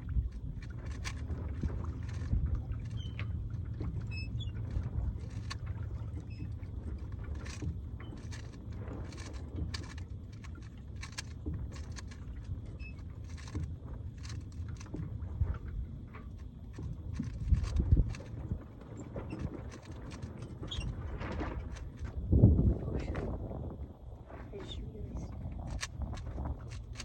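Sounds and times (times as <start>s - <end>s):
wind rumble on microphone: 0.0s - 27.0s
puzzle cube clicking: 8.2s - 12.2s, 14.2s - 14.5s, 25.7s - 27.0s.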